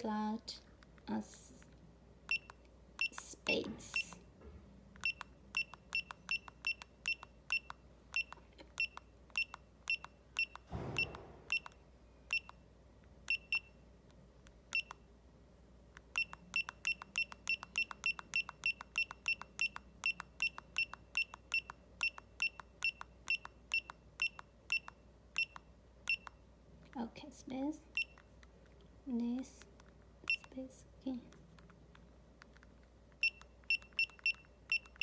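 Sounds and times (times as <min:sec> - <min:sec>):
watch pager beeping: 0:02.2 - 0:04.3, 0:05.0 - 0:12.6, 0:13.2 - 0:13.8, 0:14.7 - 0:15.1, 0:16.0 - 0:26.4, 0:27.9 - 0:28.4, 0:30.2 - 0:30.6, 0:33.2 - 0:35.0.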